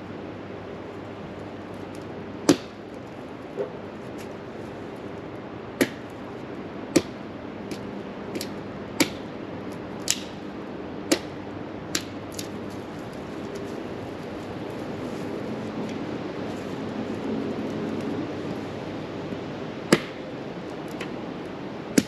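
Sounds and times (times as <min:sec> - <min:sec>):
wood being chopped: 0:02.4 - 0:02.8, 0:05.8 - 0:06.2, 0:06.9 - 0:09.3, 0:10.0 - 0:10.4, 0:11.1 - 0:12.5, 0:19.9 - 0:20.2.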